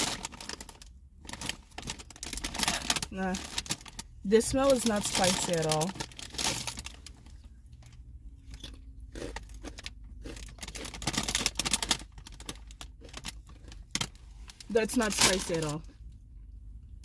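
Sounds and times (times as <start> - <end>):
potato chips crunching: 4.8 - 7.3, 8.4 - 14.2.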